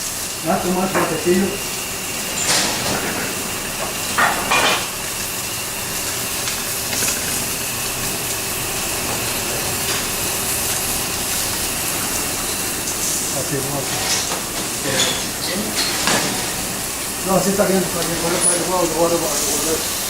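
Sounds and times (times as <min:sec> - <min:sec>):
food cooking on stove: 0:00.0 - 0:20.0
restaurant kitchen hiss: 0:00.0 - 0:20.0.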